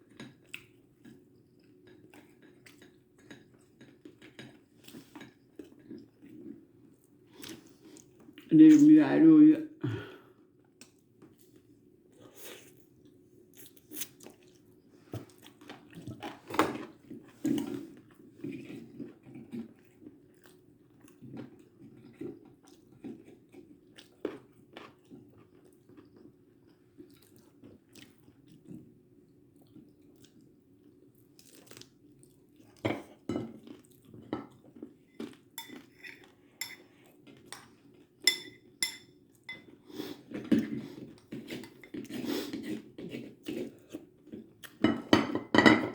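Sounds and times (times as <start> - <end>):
dishes and food clattering: 35.2 - 36.8, 38.3 - 39.7, 44.8 - 45.9.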